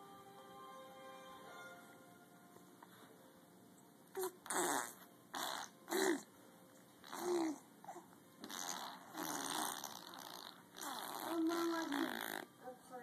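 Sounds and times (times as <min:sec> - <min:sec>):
person making fart noises: 0:04.2 - 0:06.3, 0:07.0 - 0:07.6, 0:08.4 - 0:12.6.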